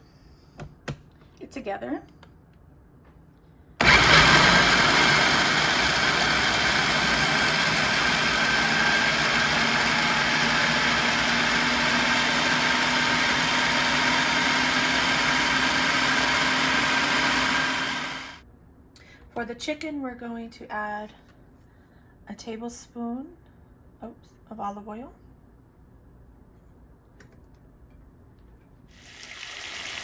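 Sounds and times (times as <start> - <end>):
electric blender running: 3.8 - 18.4.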